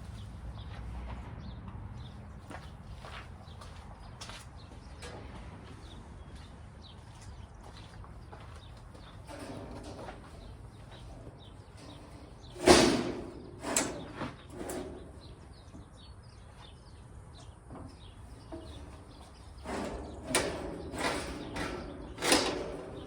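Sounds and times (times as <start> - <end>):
heavy metal clanks and knocks: 9.2 - 15.6, 17.7 - 23.0.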